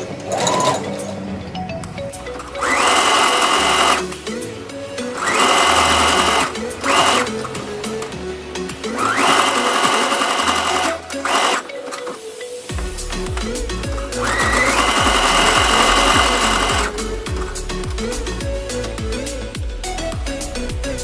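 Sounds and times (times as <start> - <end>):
background music: 0.0 - 21.0
sewing machine stitching: 2.4 - 4.1, 5.2 - 7.6, 9.0 - 11.7, 14.2 - 17.0.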